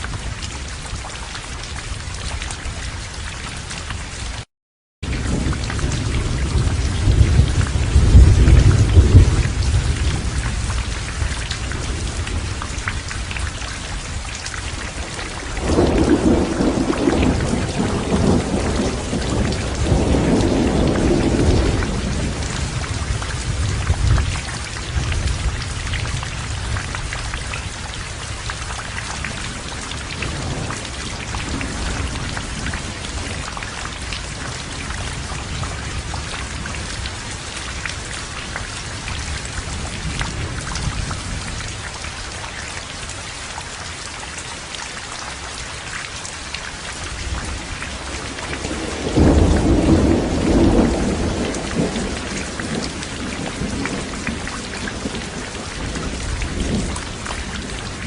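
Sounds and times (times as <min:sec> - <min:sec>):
heavy rain: 0:00.0 - 0:58.0
rolling thunder: 0:05.0 - 0:37.4, 0:47.2 - 0:58.0.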